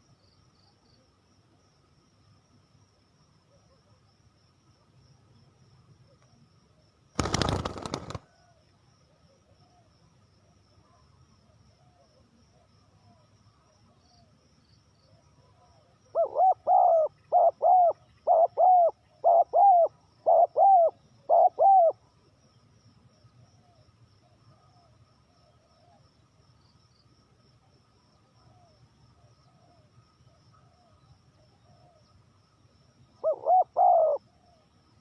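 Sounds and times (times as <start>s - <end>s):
faint coos of other doves: 7.8s - 10.0s, 15.1s - 22.4s, 23.2s - 26.2s, 28.2s - 32.2s, 33.1s - 34.8s
dove cooing: 16.1s - 22.0s, 33.2s - 34.6s.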